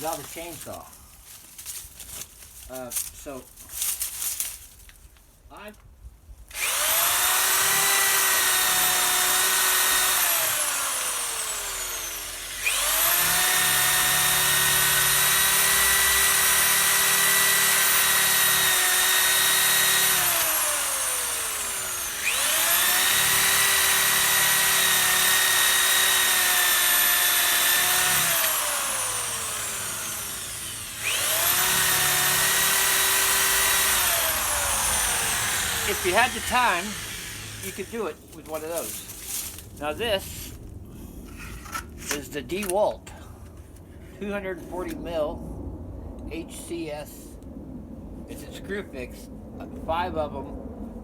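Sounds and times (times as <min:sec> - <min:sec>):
reciprocating saw cutting wood: 0:06.5 - 0:39.6.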